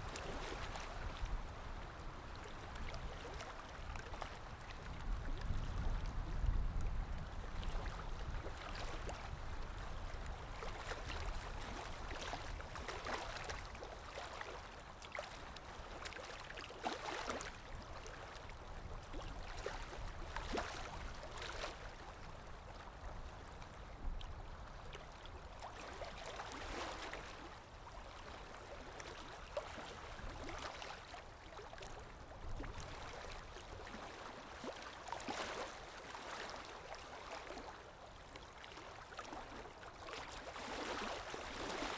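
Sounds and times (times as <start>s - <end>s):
water flowing and splashing: 32.6s - 41.9s.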